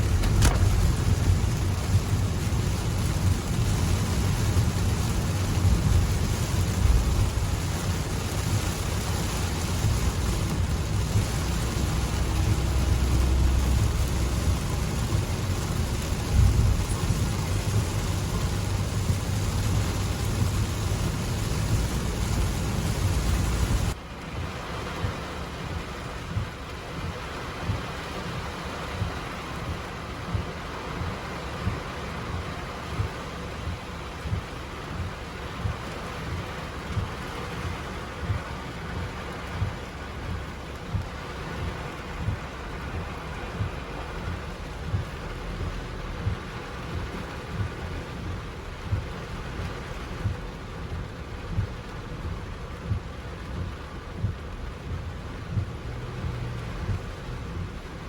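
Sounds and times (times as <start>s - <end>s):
deep rumble: 0.0s - 24.0s
heavy rain pouring: 0.0s - 58.0s.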